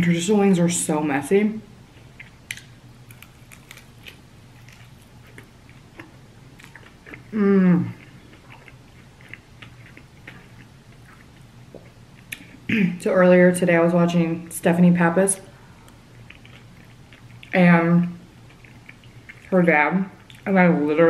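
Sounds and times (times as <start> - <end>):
chewing and biting food: 2.1 - 12.4, 16.1 - 17.6, 18.4 - 19.6.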